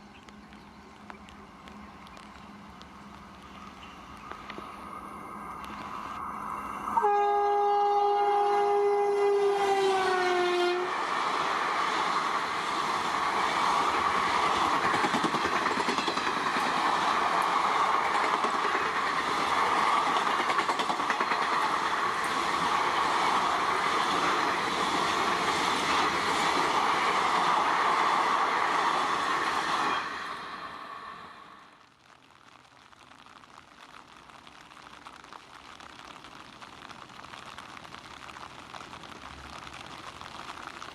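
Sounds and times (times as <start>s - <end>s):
locomotive horn: 7.0s - 10.9s
train coaches rushing by: 9.6s - 31.7s.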